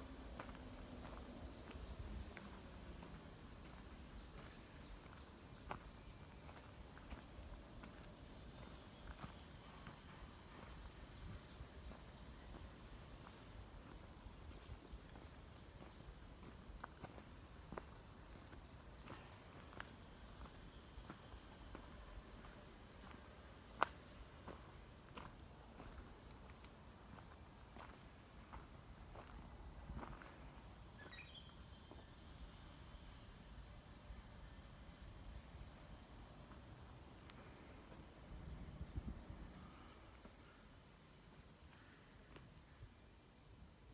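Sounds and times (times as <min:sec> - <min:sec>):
insects chorus: 0:00.0 - 0:43.9
footsteps on forest trail: 0:00.4 - 0:32.2.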